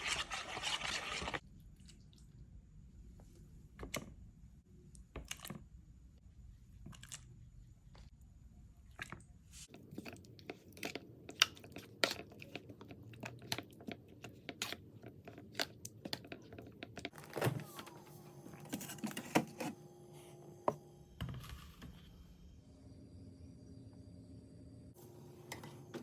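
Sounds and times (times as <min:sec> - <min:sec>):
faint steady hum: 0:17.4 - 0:26.0.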